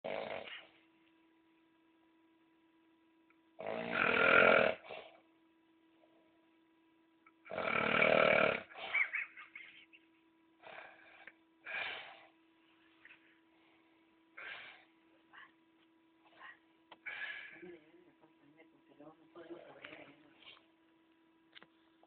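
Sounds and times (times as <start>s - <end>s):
person snoring: 0.0s - 0.7s, 3.6s - 5.2s, 7.5s - 8.8s
snorts and breaths: 10.6s - 12.4s, 14.4s - 14.9s, 17.0s - 17.6s.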